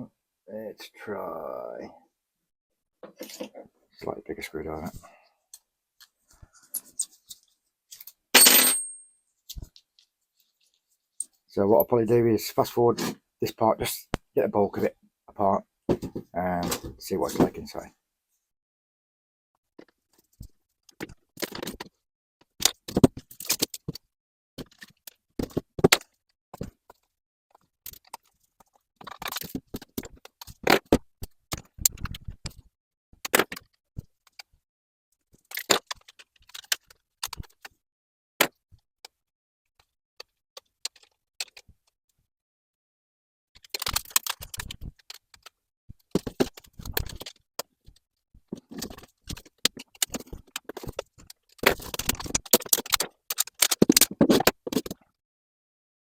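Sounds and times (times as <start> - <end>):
metal parts clicking and rattling: 43.6 - 45.5, 48.6 - 54.4.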